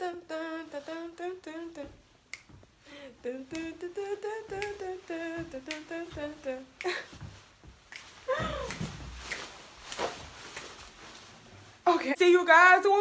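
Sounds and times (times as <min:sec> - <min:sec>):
finger snaps: 0:02.3 - 0:02.7, 0:04.5 - 0:04.8, 0:05.7 - 0:05.9, 0:06.8 - 0:07.2, 0:07.9 - 0:09.6
person humming a tune: 0:03.2 - 0:07.2.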